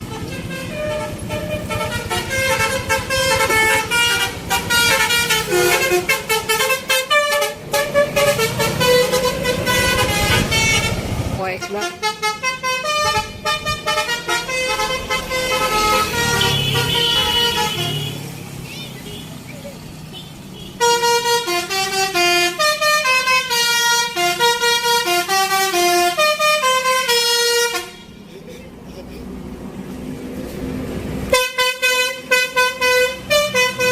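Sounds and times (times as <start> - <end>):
multi-tone musical bus horn: 0.0 - 19.4, 20.1 - 28.4, 31.2 - 33.9
low engine rumble: 0.0 - 20.7.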